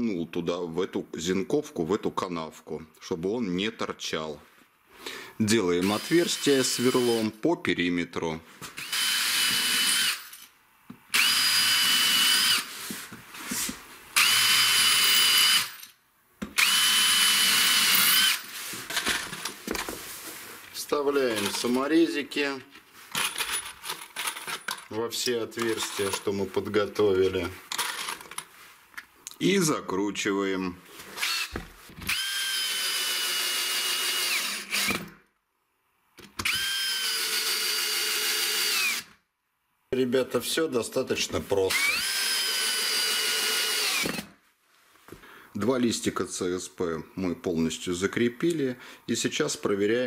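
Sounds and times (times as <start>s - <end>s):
electric drill boring through board: 5.8s - 7.2s, 8.8s - 10.4s, 11.1s - 12.7s, 14.2s - 15.8s, 16.6s - 18.5s, 31.2s - 35.1s, 36.4s - 39.1s, 41.7s - 44.3s.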